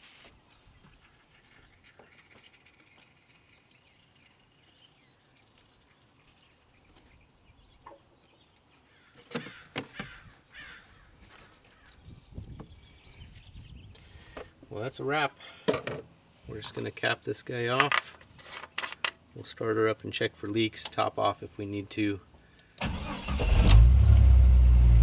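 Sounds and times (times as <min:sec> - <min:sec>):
bird cawing: 0:08.9 - 0:12.0.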